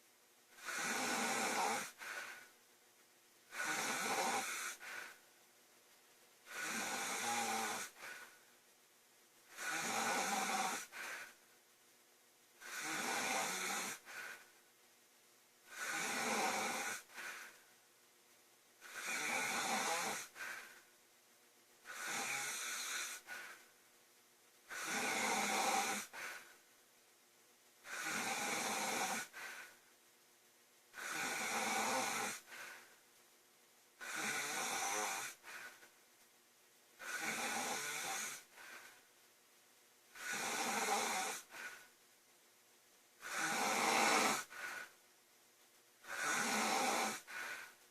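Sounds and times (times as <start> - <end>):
woman snoring: 0.6 - 2.5, 3.5 - 5.2, 6.4 - 8.4, 9.5 - 11.4, 12.6 - 14.5, 15.7 - 17.6, 18.8 - 20.8, 21.8 - 23.6, 24.7 - 26.5, 27.8 - 29.8, 30.9 - 32.8, 34.0 - 35.9, 37.0 - 39.0, 40.1 - 41.9, 43.2 - 44.9, 46.0 - 47.8.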